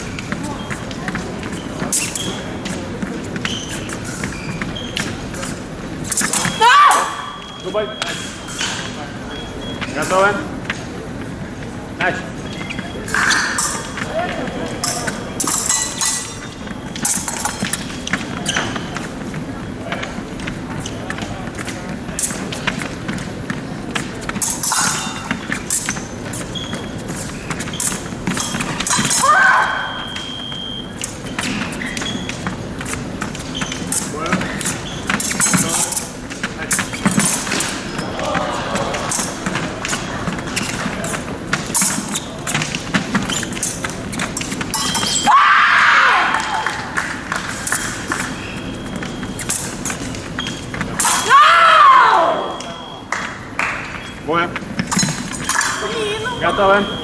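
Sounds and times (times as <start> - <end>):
fencer yelling: 6.5 - 7.4, 51.0 - 52.6
loud cry: 51.1 - 52.6
high electronic beeps: 52.5 - 53.1, 55.5 - 57.0.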